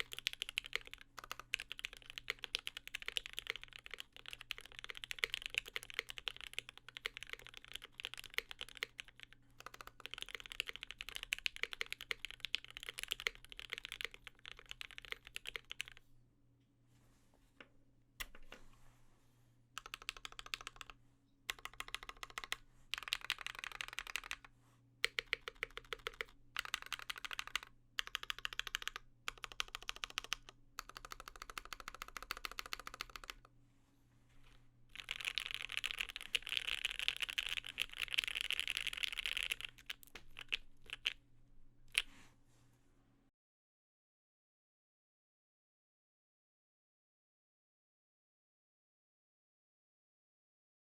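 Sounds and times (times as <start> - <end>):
mechanical keyboard typing: 0.0 - 16.0, 19.8 - 33.5, 34.9 - 41.2.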